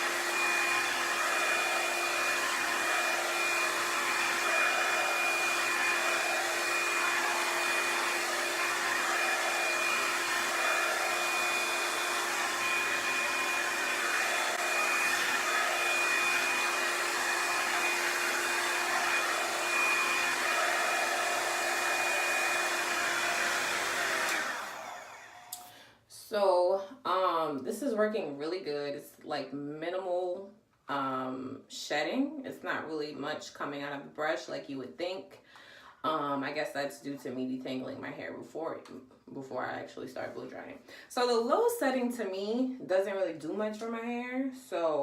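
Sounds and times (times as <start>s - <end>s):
hair dryer running: 0.0s - 25.8s.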